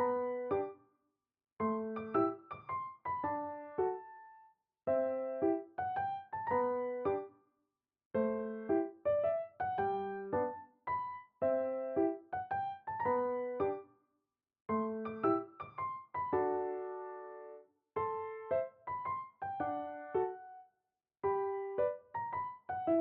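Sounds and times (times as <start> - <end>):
solo piano music: 0.0 - 0.8, 1.6 - 7.3, 8.2 - 13.9, 14.7 - 23.0.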